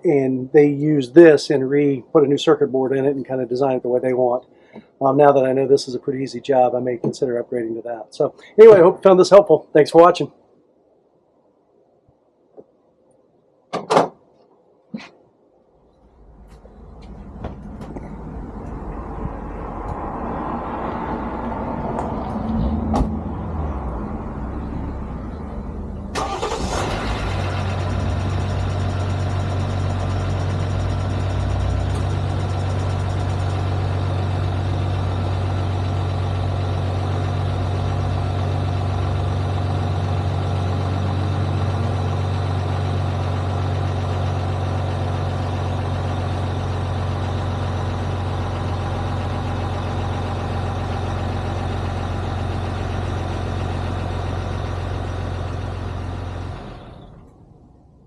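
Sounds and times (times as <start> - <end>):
car engine starting and idling: 16.0 - 58.0.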